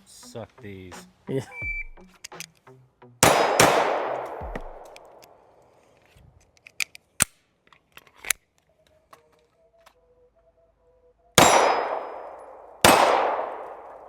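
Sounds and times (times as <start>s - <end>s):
pistol shot echoing: 3.2s - 5.3s, 11.4s - 14.0s.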